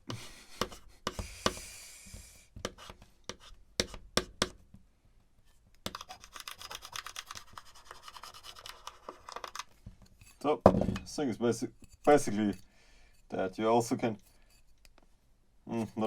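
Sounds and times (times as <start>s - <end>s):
clicks and taps: 0.1s - 1.6s, 2.6s - 4.6s
screwdriver scratching metal platter: 5.9s - 10.4s.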